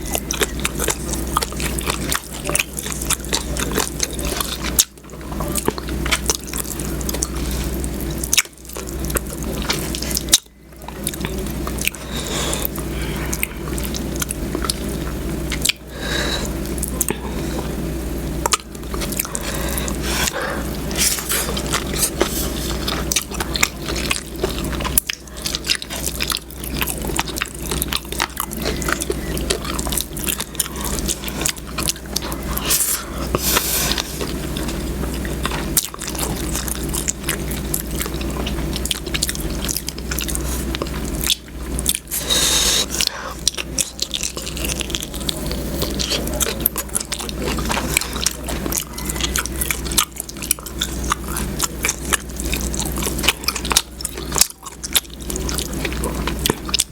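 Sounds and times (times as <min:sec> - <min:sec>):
wet chewing and lip smacking: 0:00.0 - 0:17.7, 0:18.4 - 0:56.9
steady low hum: 0:00.0 - 0:56.9.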